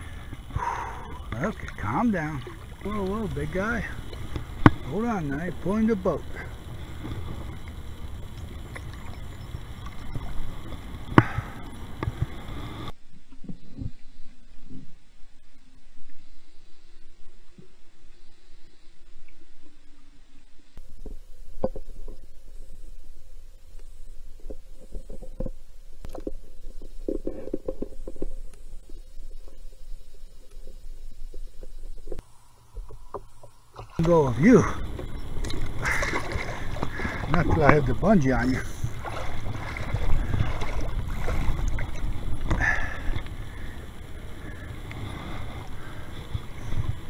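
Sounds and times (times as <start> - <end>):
low rumble of water: 0.0 - 47.0
knocks and thumps against kayak: 0.3 - 5.4, 6.4 - 12.4, 30.6 - 43.4.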